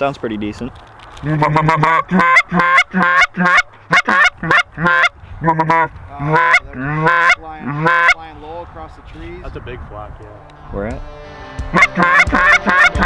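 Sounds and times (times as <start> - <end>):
goose call honks: 1.2 - 8.2, 11.7 - 13.0.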